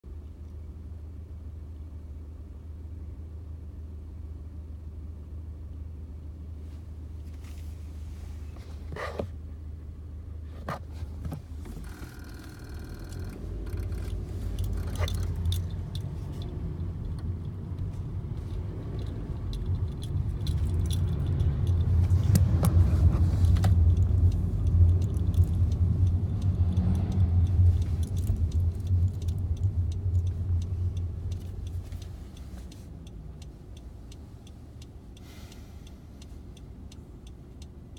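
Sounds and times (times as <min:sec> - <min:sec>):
car road and engine rumble: 0:00.0 - 0:37.9
small clicks and rattles: 0:11.3 - 0:22.2, 0:23.4 - 0:32.5.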